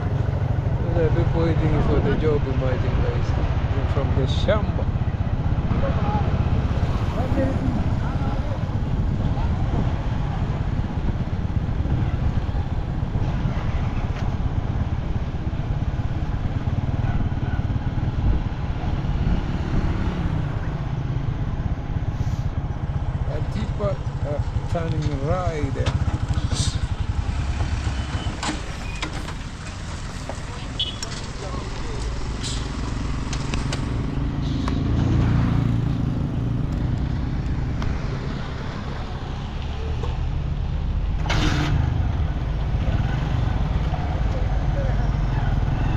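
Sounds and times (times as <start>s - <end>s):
vehicle engine rumbling: 0.0s - 45.9s
diesel truck engine running: 20.3s - 39.5s.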